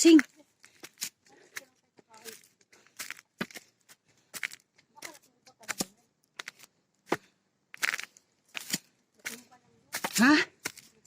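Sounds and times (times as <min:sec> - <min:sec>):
footsteps crunching on trail: 0:00.0 - 0:11.0.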